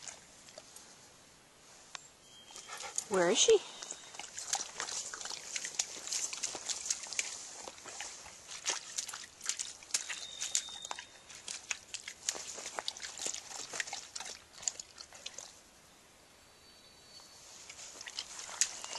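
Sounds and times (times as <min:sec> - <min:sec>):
river water splashing: 0:00.0 - 0:01.0, 0:02.7 - 0:15.7, 0:17.6 - 0:18.9.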